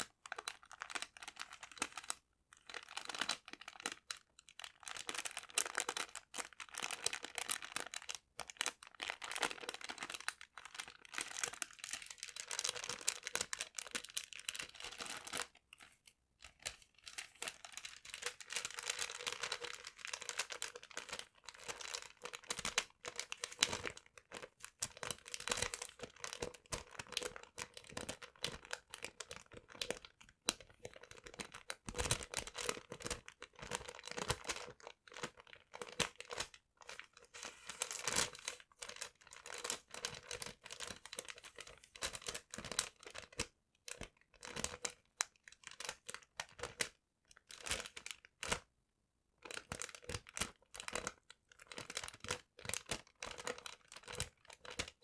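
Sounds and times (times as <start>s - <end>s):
paper crinkling and crumpling: 8.6s - 43.5s.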